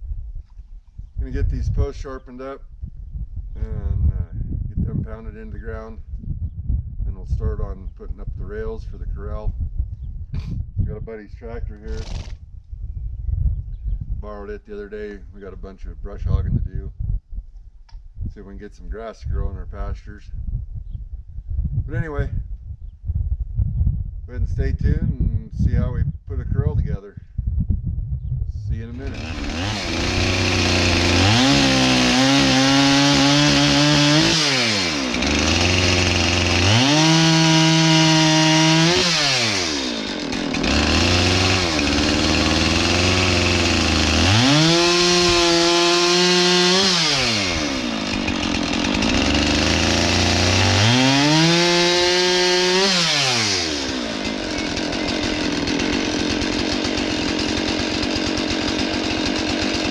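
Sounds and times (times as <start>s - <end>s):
chainsaw cutting wood: 11.8s - 12.4s, 28.9s - 59.9s
chainsaw idling: 11.8s - 12.4s, 28.9s - 59.9s.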